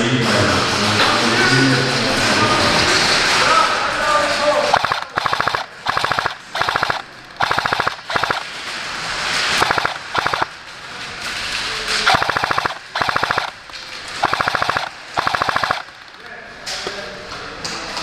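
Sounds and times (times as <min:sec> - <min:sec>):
airsoft gun firing bursts: 0:04.7 - 0:08.6, 0:09.5 - 0:10.6, 0:12.0 - 0:16.2.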